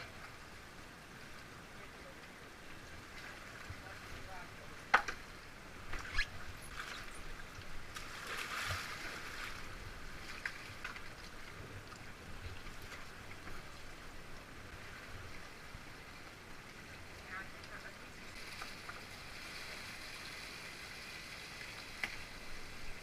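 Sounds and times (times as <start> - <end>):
kayak paddle splashing: 3.0 - 14.0.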